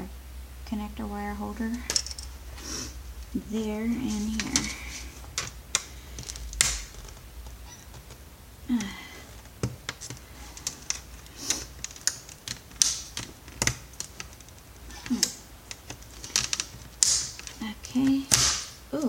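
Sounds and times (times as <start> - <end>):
plastic and metal parts clicking: 4.0 - 19.0.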